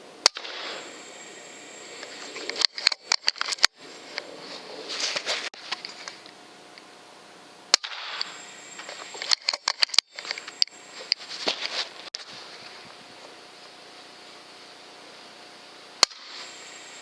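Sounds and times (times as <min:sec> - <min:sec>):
air rifle firing: 0:00.2 - 0:01.2, 0:07.7 - 0:10.3, 0:16.0 - 0:16.6
small clicks and knocks: 0:02.0 - 0:04.3, 0:07.8 - 0:12.2.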